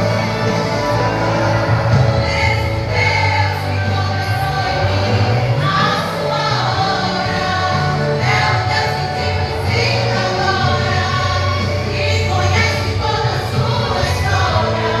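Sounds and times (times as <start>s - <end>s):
vocal group singing gospel: 0.0s - 15.0s.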